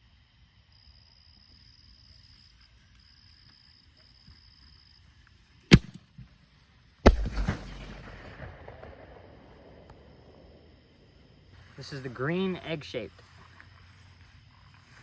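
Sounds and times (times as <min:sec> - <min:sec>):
firework shell bursting bang: 0:07.1 - 0:10.5
firework mortar launch thump: 0:07.1 - 0:10.6.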